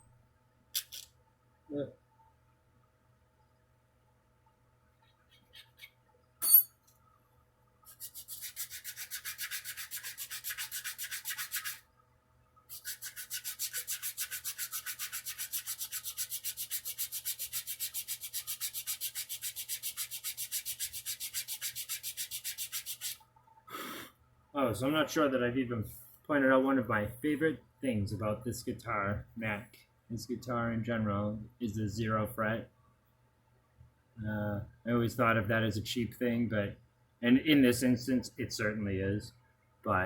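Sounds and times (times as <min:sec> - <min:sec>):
sandpaper on wood: 0:07.9 - 0:11.8, 0:12.7 - 0:23.2.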